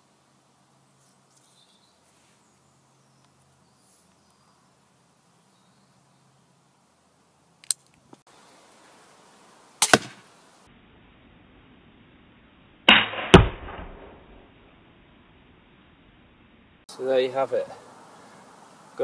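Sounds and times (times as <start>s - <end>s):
bolt striking target: 9.8s - 10.2s, 12.9s - 14.4s
crossbow shot snapping: 9.8s - 10.2s, 12.9s - 14.3s.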